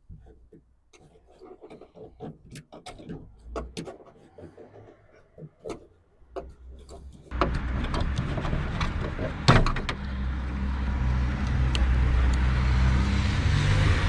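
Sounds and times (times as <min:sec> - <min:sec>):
car parts clicking and knocking: 0:00.0 - 0:10.6.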